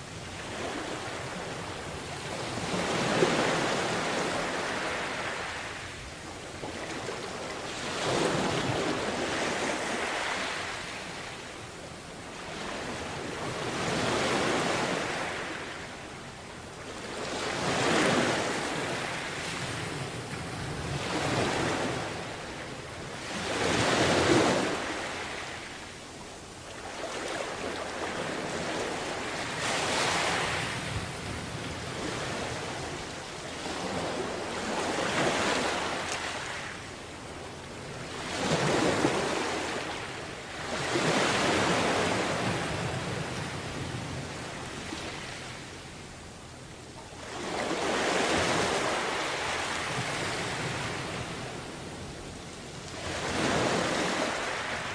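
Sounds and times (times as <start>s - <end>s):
sea waves washing onto beach: 47.2s - 54.9s.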